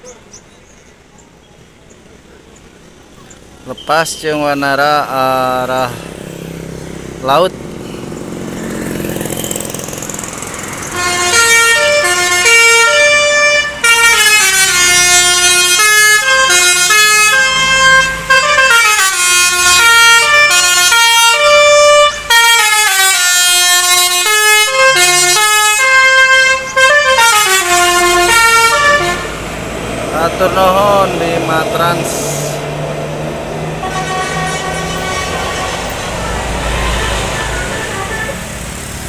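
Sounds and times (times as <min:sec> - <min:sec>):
bus horn playing a melody: 0:10.8 - 0:29.5, 0:33.7 - 0:38.7.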